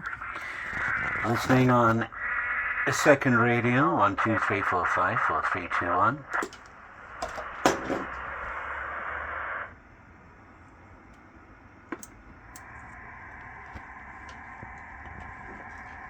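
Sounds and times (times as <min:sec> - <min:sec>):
radio speaker hiss: 0:00.0 - 0:10.3, 0:11.8 - 0:16.0
click: 0:11.9 - 0:12.7.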